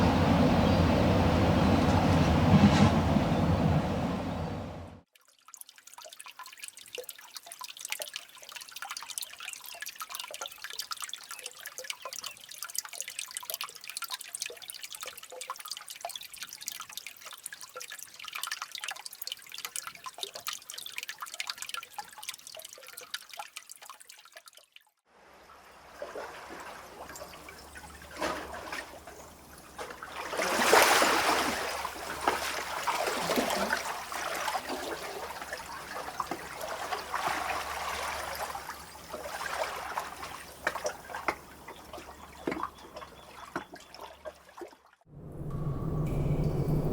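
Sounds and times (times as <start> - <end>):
low wind-driven rumble: 0.0 - 5.0, 45.1 - 46.9
water dripping in a cave: 5.0 - 25.0, 26.6 - 44.8
sea water washing in: 25.5 - 42.3.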